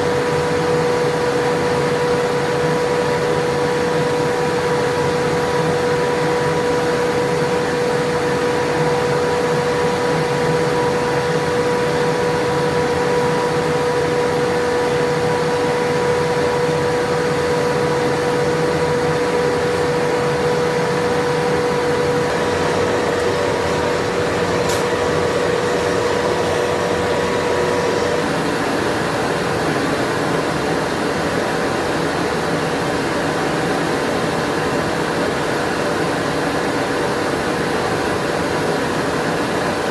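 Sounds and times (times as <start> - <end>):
forge blower rushing: 20.0 - 30.4
whining tone: 21.8 - 29.6.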